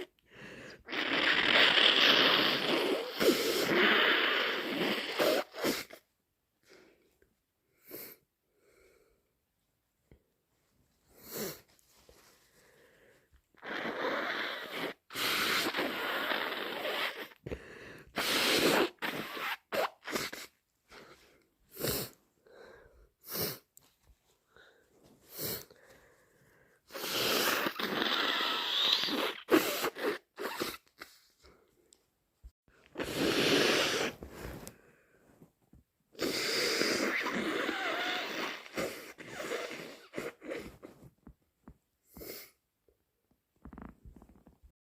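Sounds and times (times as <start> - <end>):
person blowing nose: 0.0 - 6.1, 11.1 - 12.8, 13.6 - 23.8, 24.5 - 31.6, 32.8 - 35.4, 36.1 - 41.3, 42.1 - 42.6.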